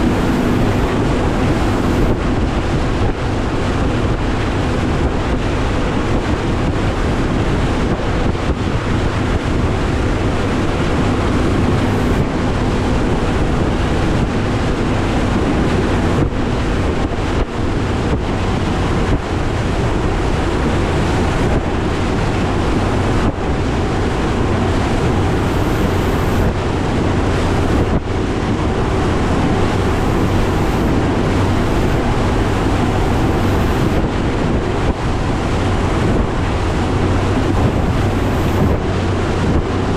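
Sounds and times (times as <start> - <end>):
outboard motor running: 0.0 - 39.9
wind buffeting microphone: 0.0 - 39.9.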